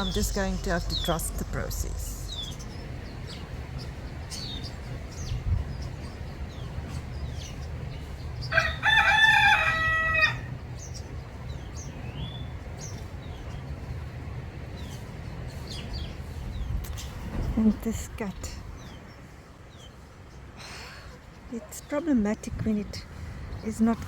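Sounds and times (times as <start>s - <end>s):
small birds chirping: 0.0s - 24.0s
rooster crowing: 8.5s - 10.5s.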